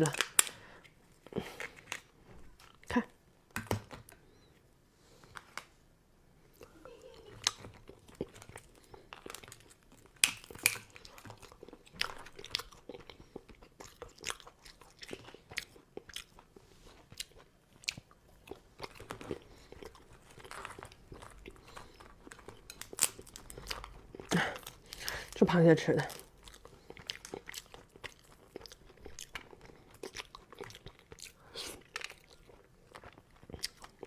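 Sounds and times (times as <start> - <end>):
crab shell crunching: 0.0 - 2.2, 7.5 - 16.4, 18.5 - 25.4
chewing: 0.0 - 2.9, 6.5 - 25.4, 26.0 - 34.0.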